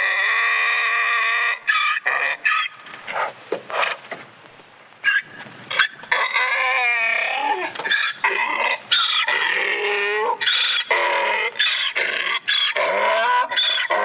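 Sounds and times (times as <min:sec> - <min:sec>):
donkey braying: 0:05.0 - 0:14.0.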